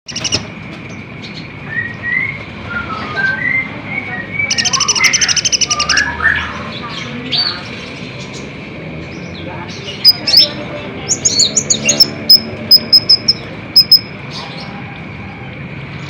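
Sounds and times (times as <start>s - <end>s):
bird chirps: 0.1s - 0.5s, 1.2s - 7.7s, 10.0s - 14.8s
rapid high bird trill: 0.1s - 0.6s, 4.4s - 6.7s, 10.0s - 14.8s.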